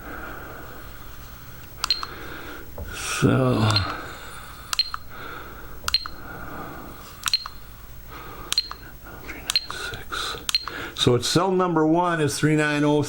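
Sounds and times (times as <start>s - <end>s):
cell checker click-beeps: 1.8s - 2.2s, 3.7s - 4.0s, 4.7s - 5.1s, 5.9s - 6.2s, 7.2s - 7.6s, 8.5s - 8.9s, 9.5s - 9.8s, 10.4s - 10.8s.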